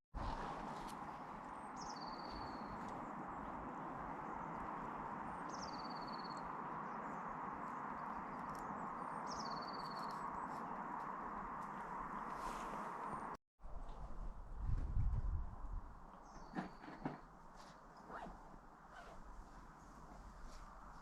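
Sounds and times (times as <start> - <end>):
songbird singing a trill: 1.5 - 3.0, 5.3 - 10.8.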